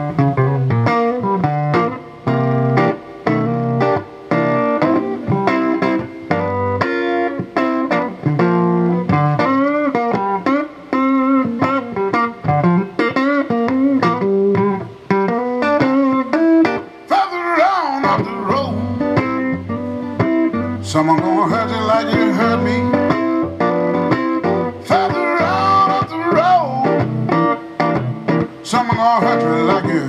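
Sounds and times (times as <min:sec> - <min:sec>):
lead guitar with bent notes: 0:00.0 - 0:30.0
bass line: 0:18.2 - 0:27.4.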